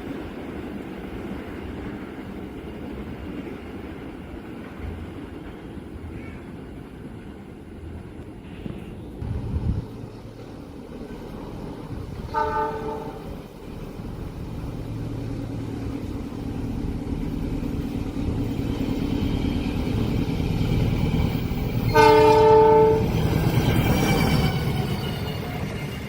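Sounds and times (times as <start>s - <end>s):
train rumble: 0.0s - 26.0s
train horn blasts: 12.2s - 13.4s, 21.9s - 23.2s.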